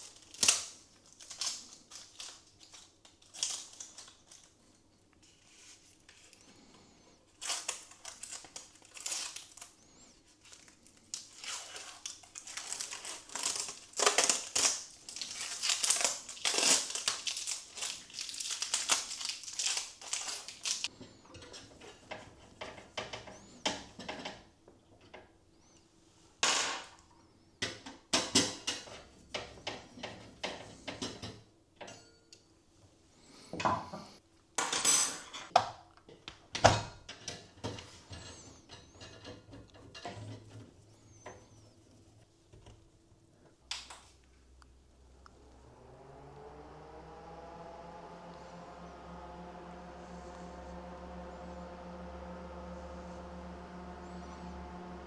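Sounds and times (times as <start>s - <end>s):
packaging crinkling: 0.0s - 4.6s, 7.3s - 20.9s.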